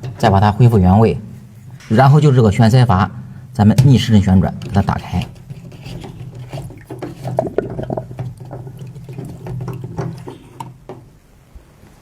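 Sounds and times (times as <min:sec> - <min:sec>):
water trickling and splashing: 0:04.9 - 0:11.3.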